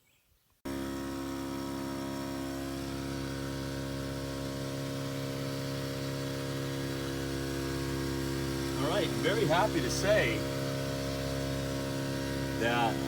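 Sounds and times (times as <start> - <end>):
steady layered hum: 8.2 - 13.0.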